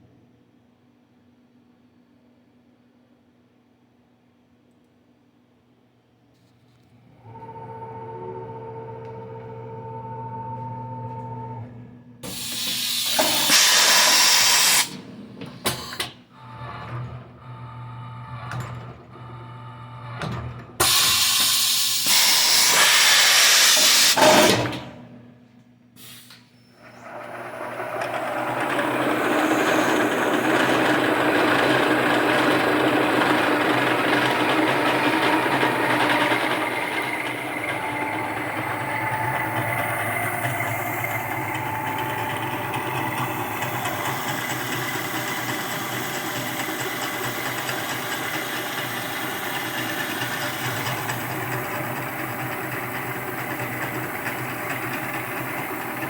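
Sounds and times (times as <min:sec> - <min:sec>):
milling machine drilling steel: 0:27.0 - 0:56.0.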